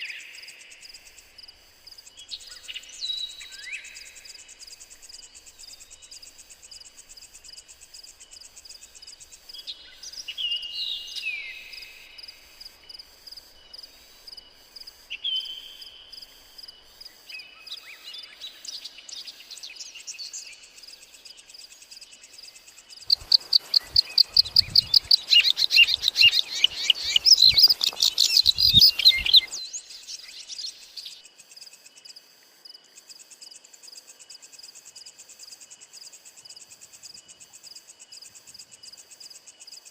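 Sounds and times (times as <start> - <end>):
insect trill: 0.0 - 39.9
rapid repeated bird chirps: 0.0 - 39.9
birds calling: 23.0 - 31.2.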